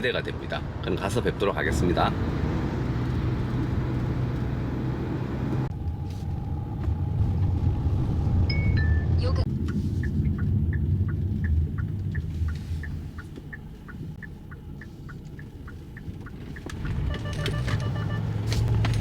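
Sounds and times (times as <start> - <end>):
van engine and road rumble: 0.0 - 19.0
turn signal ticking: 9.4 - 19.0
short electronic beeping: 16.8 - 18.4.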